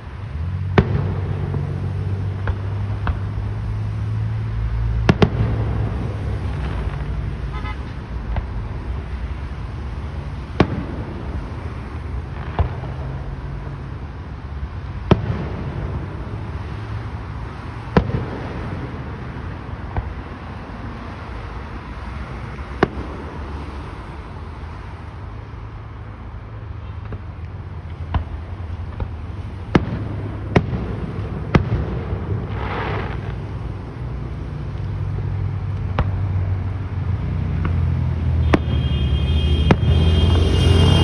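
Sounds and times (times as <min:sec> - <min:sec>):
fireworks bursting: 0:00.0 - 0:13.9, 0:15.0 - 0:21.2, 0:22.0 - 0:24.8, 0:26.9 - 0:41.0.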